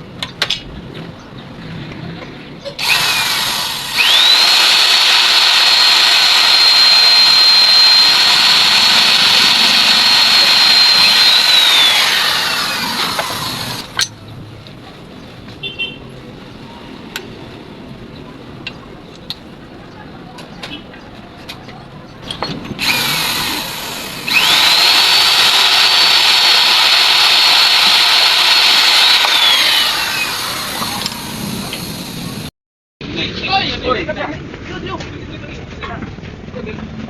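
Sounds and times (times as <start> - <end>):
angle grinder cutting metal: 2.8 - 14.1, 22.8 - 32.5.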